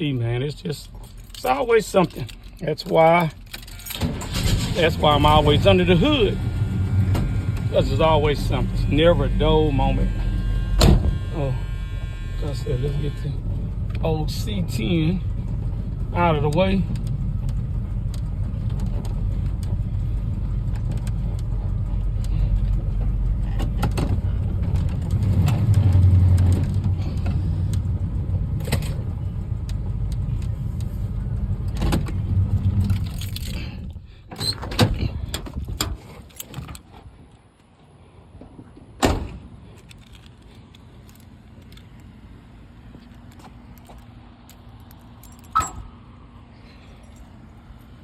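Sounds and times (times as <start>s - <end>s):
pickup engine rumbling: 0.0s - 34.3s
sharp thump: 10.8s - 11.3s.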